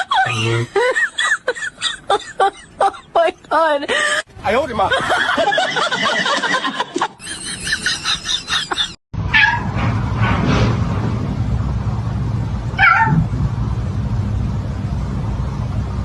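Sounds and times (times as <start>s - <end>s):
steady low rumble: 9.2s - 16.0s
cat meowing and yowling: 12.8s - 13.3s.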